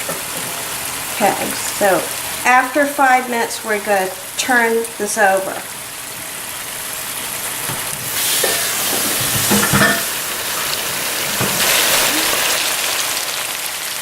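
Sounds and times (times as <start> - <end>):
meat sizzling in a frying pan: 0.0 - 14.0
utensil knocking and scraping pan: 8.4 - 10.1.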